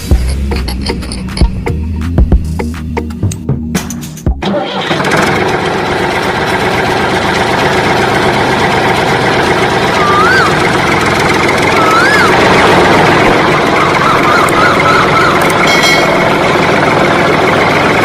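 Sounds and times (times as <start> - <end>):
music: 0.0 - 4.8
engine-like running noise: 4.4 - 18.0
wavering whistle-like tones: 9.9 - 10.8, 11.7 - 12.4, 13.8 - 16.1.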